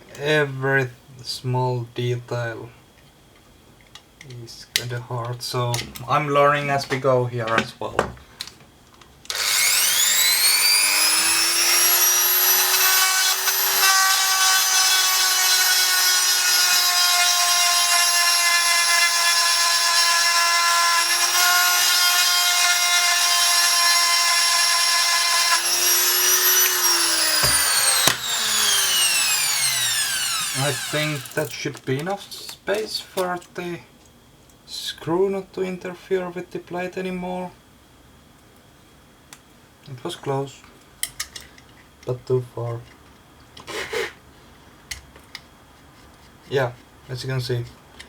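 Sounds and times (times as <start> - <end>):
rotary tool whining: 9.3 - 31.6.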